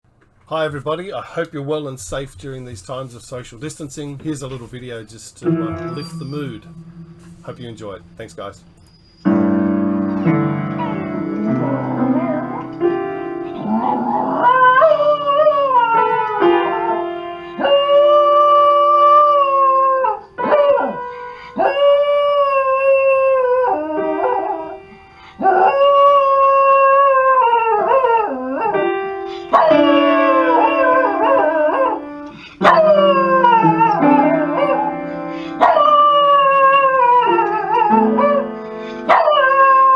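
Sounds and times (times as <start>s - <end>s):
held piano notes: 2.0s - 18.5s, 28.6s - 39.9s
dog howling: 10.9s - 12.8s, 13.6s - 39.9s.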